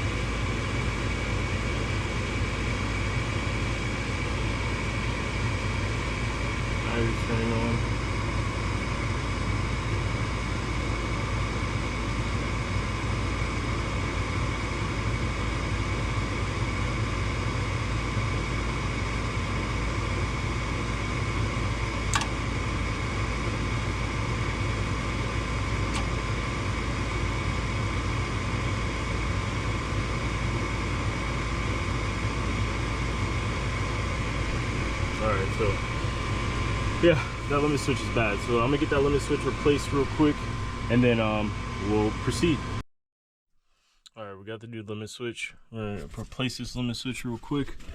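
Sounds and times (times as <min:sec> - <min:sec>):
gas furnace humming: 0:00.0 - 0:42.8
sharp click: 0:22.1 - 0:22.3.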